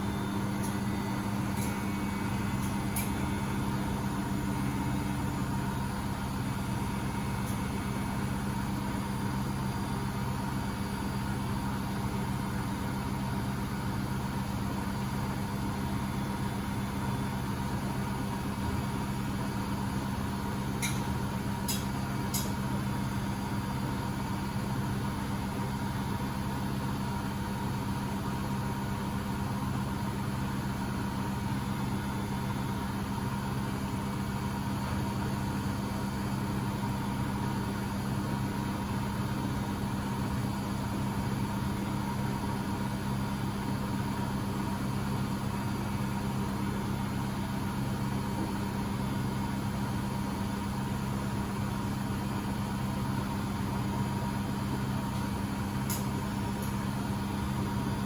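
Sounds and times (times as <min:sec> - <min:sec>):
washing machine spinning: 0:00.0 - 0:58.0.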